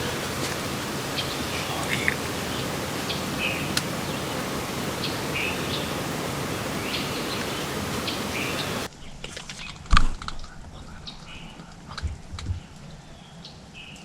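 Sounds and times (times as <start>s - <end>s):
steady background hiss: 0.0s - 8.9s
songbirds chirping: 0.0s - 9.2s.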